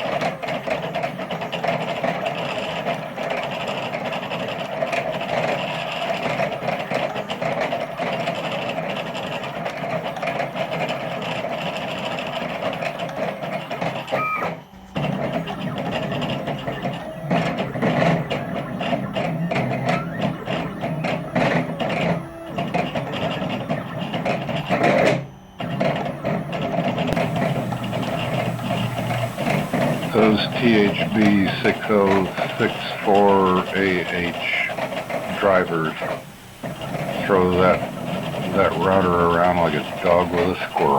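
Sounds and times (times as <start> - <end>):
stepper motors whining: 27.1 - 40.9.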